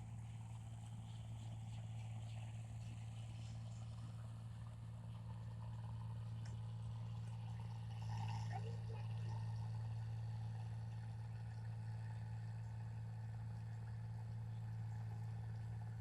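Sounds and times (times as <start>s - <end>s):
combine harvester engine drone: 0.0s - 16.0s.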